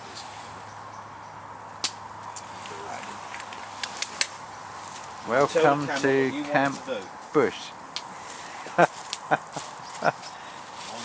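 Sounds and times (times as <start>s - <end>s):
campfire crackling and popping: 1.8s - 10.4s.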